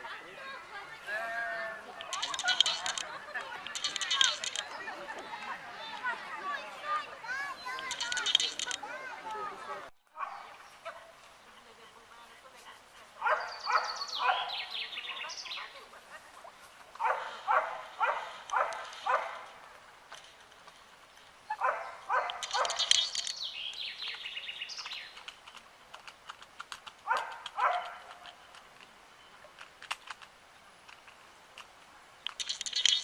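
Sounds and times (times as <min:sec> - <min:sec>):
faint clicks: 0:02.0 - 0:06.1, 0:07.6 - 0:09.5, 0:22.2 - 0:33.0.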